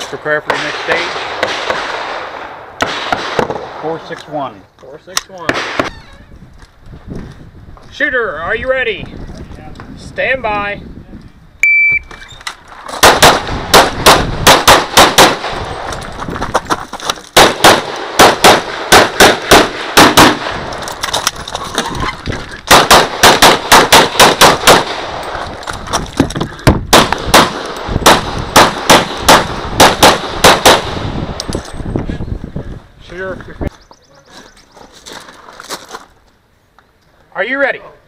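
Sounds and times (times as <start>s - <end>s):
pistol shots fired rapidly: 13.0s - 15.6s, 17.4s - 20.6s, 22.7s - 25.0s, 26.9s - 31.0s.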